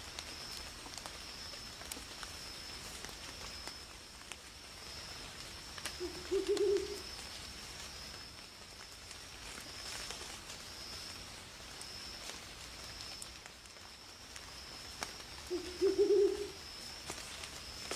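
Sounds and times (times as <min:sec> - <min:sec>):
low quivering animal call: 0:15.5 - 0:16.6.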